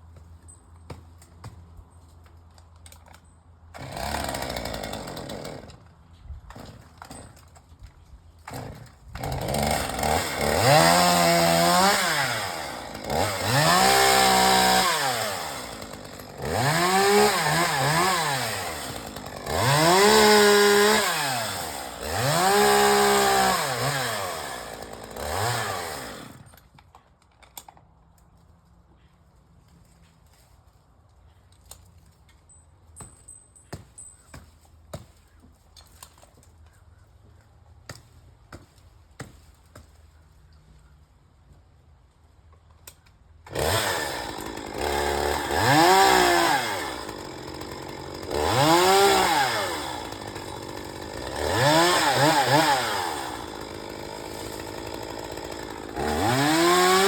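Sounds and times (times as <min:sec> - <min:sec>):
chainsaw revving: 0:03.8 - 0:05.8, 0:08.5 - 0:26.5, 0:43.5 - 0:57.0.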